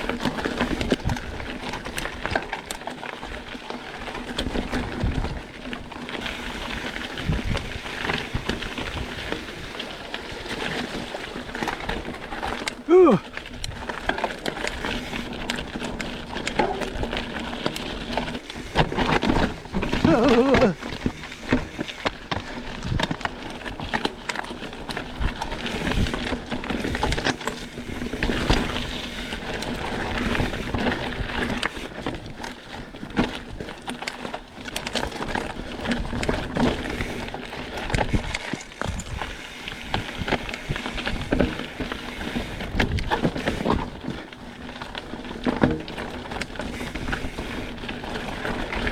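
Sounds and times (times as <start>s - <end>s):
bike rattling and clicking: 0.0s - 48.9s
bike tyres on dirt trail: 0.0s - 48.9s.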